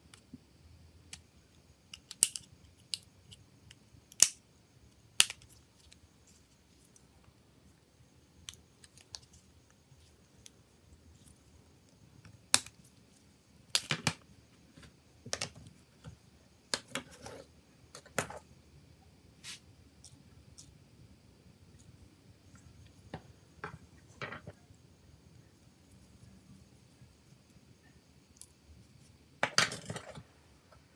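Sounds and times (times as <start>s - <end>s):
plastic parts snapping: 1.9s - 3.0s.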